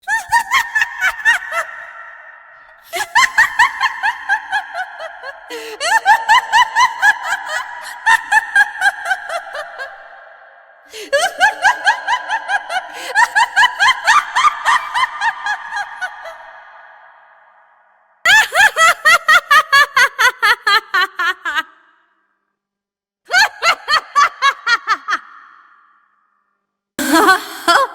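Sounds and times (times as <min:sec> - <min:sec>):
woman cackling laugh: 0:27.0 - 0:27.9.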